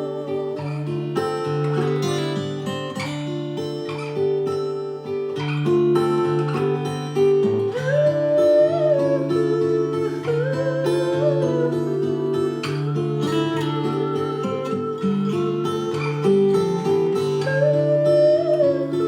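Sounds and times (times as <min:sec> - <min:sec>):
acoustic guitar folk song: 0:00.0 - 0:19.0
held sliding melody note: 0:07.4 - 0:19.0.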